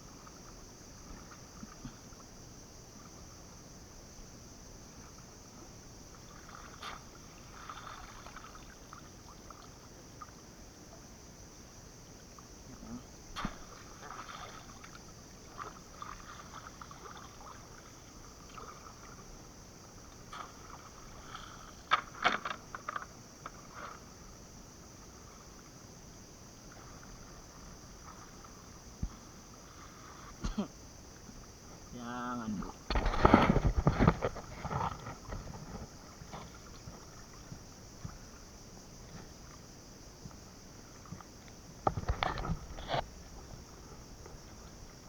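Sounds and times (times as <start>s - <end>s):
steady high hiss: 0.0s - 33.0s
water sloshing and splashing: 4.8s - 11.2s, 12.2s - 45.0s.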